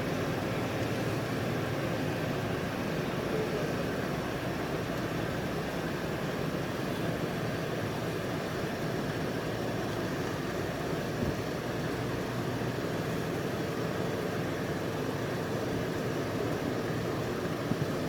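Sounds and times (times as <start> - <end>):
faint constant hum: 0.0 - 18.0
low mechanical drone: 0.0 - 18.0.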